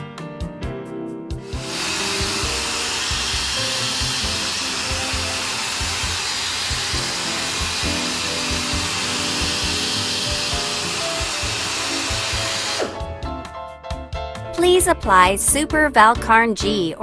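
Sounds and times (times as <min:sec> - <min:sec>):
air drill whirring: 0:01.4 - 0:13.2.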